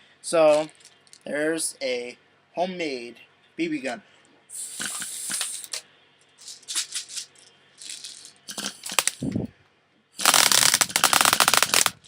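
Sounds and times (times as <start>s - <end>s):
bbs rattling in plastic bottle: 6.4s - 9.2s, 10.2s - 12.0s.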